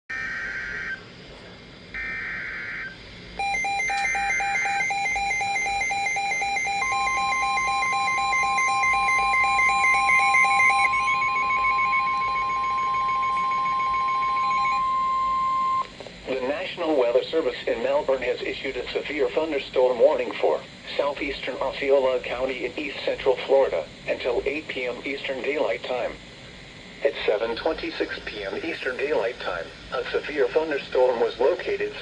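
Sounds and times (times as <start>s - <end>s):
pulsing electronic alarm tone: 0.1s - 1.0s, 2.0s - 15.9s
steady warning tone: 1.9s - 19.7s, 27.0s - 32.0s.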